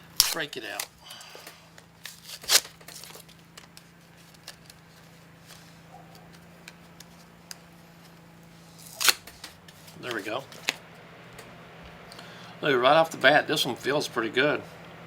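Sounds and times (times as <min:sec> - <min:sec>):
small clicks and handling noises: 0:00.2 - 0:11.5
packaging rustling: 0:01.7 - 0:10.8
packaging tearing: 0:02.0 - 0:04.8, 0:08.7 - 0:10.8.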